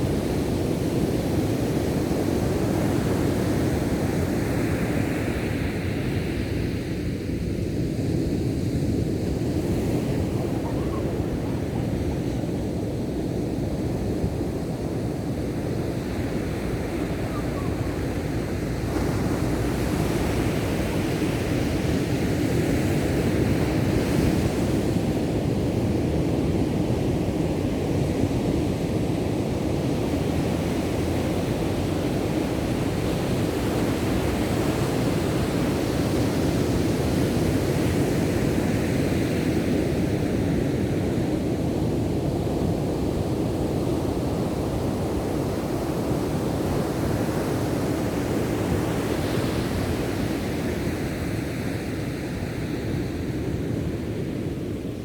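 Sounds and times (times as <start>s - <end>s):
ocean waves breaking: 9.0s - 25.0s.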